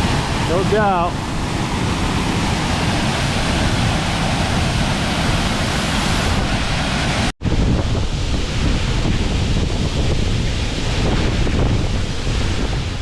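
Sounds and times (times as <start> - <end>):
waterfall rushing: 0.0 - 7.3
wind buffeting microphone: 0.0 - 13.0.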